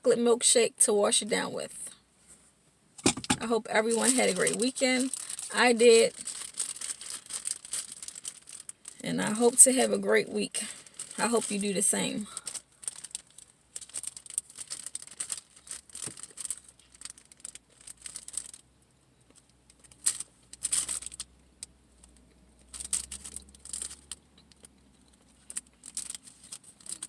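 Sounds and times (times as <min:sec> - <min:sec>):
plastic packaging tearing: 0:03.0 - 0:09.9, 0:10.7 - 0:18.6, 0:19.7 - 0:21.3, 0:22.6 - 0:27.0
plastic packaging crinkling: 0:03.0 - 0:18.7, 0:19.3 - 0:21.3, 0:22.0 - 0:27.0.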